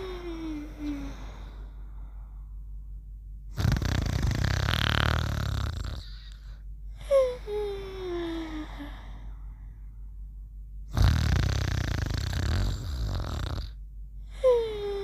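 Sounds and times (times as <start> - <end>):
cartoon rattling snore: 3.6 - 6.3, 10.9 - 13.8.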